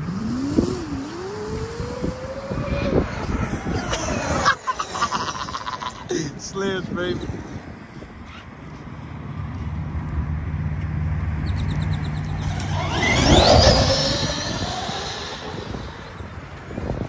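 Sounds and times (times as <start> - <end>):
vehicle passing by: 9.8 - 17.0.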